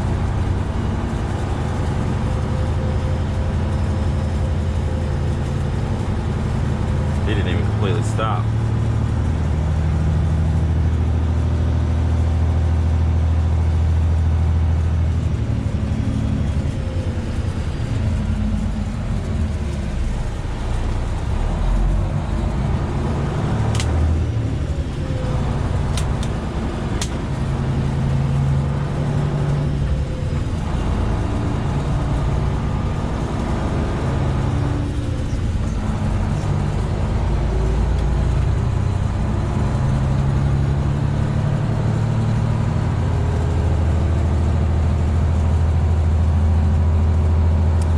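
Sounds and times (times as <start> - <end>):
truck diesel engine running: 0.0 - 47.9
short sharp clicks: 23.7 - 24.0.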